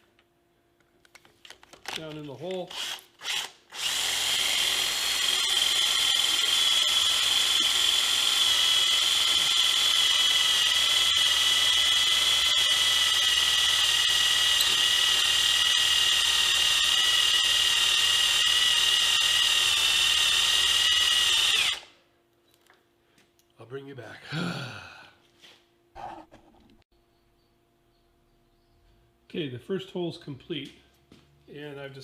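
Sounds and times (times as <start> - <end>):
electric drill whining: 2.7 - 21.9.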